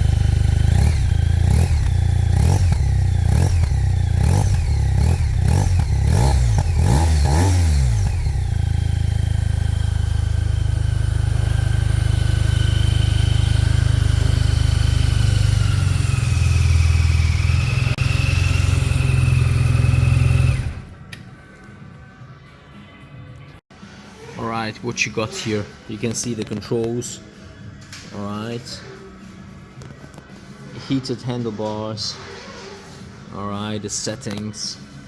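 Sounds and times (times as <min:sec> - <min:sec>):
motorcycle engine revving and idling: 0:00.0 - 0:21.0.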